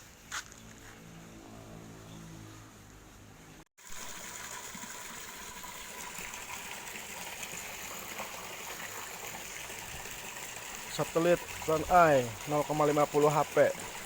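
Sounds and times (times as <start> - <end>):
pump running: 3.8 - 14.0
water gushing from pipe: 3.8 - 14.0.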